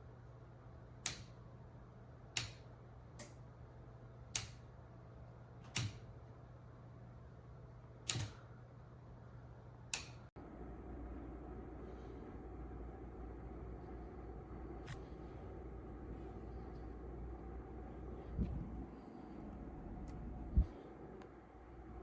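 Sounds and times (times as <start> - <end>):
steady low hum: 0.0 - 22.0
light switch clicking: 1.0 - 1.4, 2.4 - 3.4, 4.3 - 4.6, 5.7 - 6.1, 8.1 - 8.4, 9.9 - 10.3.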